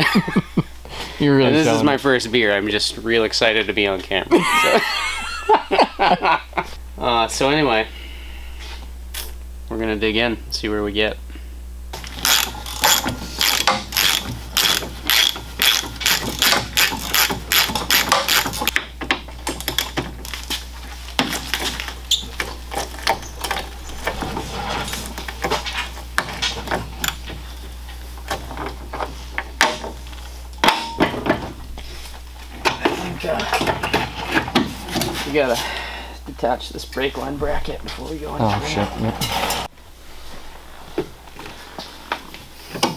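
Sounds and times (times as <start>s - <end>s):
ratchet wrench clicking: 12.1s - 18.8s.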